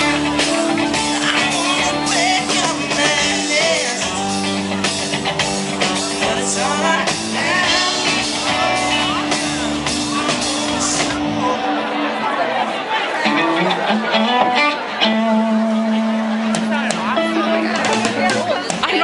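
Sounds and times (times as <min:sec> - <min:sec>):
man singing: 0:00.0 - 0:04.8, 0:05.8 - 0:09.4, 0:10.1 - 0:11.4
drums: 0:00.0 - 0:12.2, 0:13.3 - 0:19.0
bass guitar: 0:00.0 - 0:19.0
electric guitar: 0:00.0 - 0:19.0.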